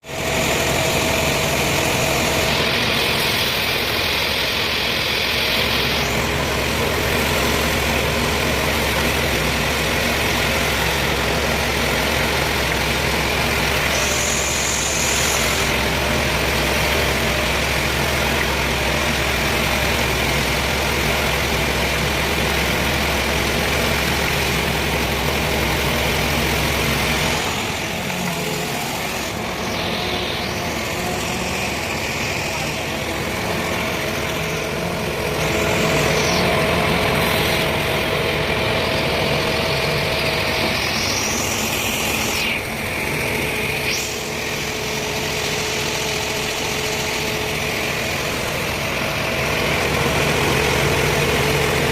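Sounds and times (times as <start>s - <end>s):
low engine hum: 0.1s - 51.9s
mechanical hiss: 13.3s - 17.7s, 25.4s - 38.0s.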